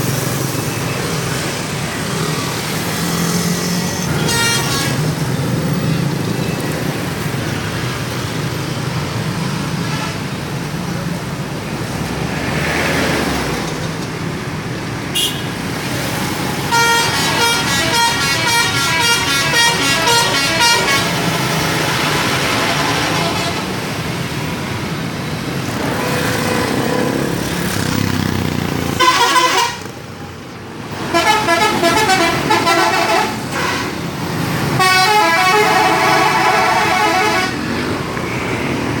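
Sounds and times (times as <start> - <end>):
engine and road noise: 0.0 - 39.0
musical air horns playing: 4.1 - 5.1, 16.6 - 23.8, 29.0 - 29.8, 31.1 - 34.1, 34.8 - 37.6.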